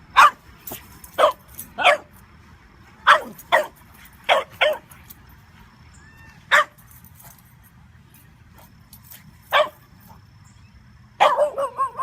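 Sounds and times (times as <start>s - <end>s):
dog barking: 0.1s - 0.4s, 1.2s - 2.1s, 3.0s - 5.0s, 6.5s - 6.8s, 9.5s - 9.8s, 11.2s - 12.0s.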